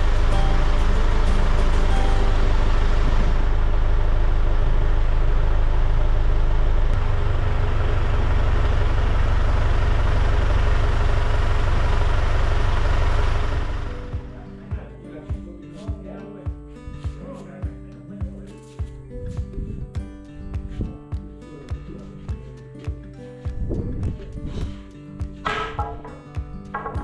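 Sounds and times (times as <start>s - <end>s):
heavy vehicle engine rumbling: 0.0s - 14.1s.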